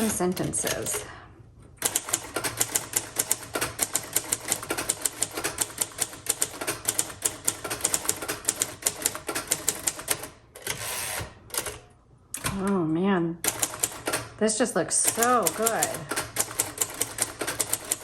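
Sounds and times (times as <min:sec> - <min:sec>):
typewriter keystroke clacks: 0:01.8 - 0:10.8, 0:13.5 - 0:14.4, 0:15.0 - 0:18.0.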